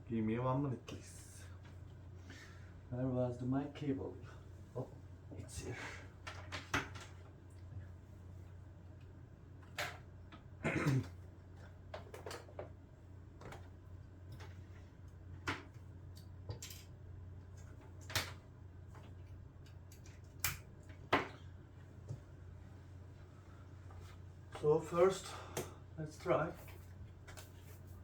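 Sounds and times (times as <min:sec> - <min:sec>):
low steady hum: 0:00.0 - 0:28.0
clicks and knocks of handling: 0:09.6 - 0:12.8, 0:13.4 - 0:16.9, 0:17.5 - 0:22.2.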